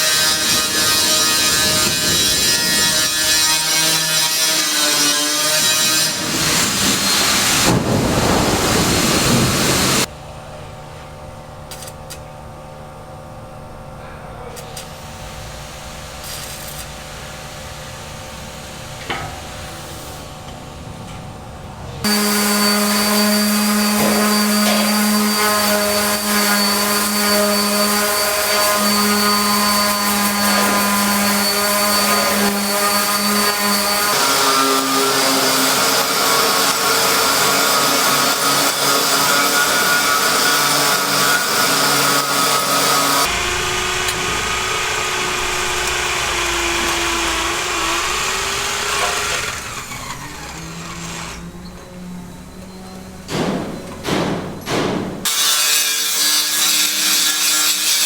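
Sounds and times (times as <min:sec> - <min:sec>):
power saw sawing: 0:00.0 - 0:10.1, 0:22.0 - 0:52.7, 0:55.2 - 0:58.0
loud machine drone: 0:05.7 - 0:10.1, 0:21.7 - 0:54.2.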